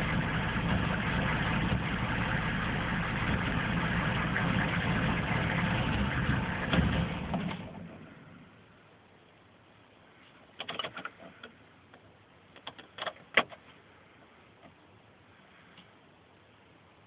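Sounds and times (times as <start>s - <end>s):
mechanical clicks and knocks: 10.6s - 11.6s, 12.6s - 13.6s.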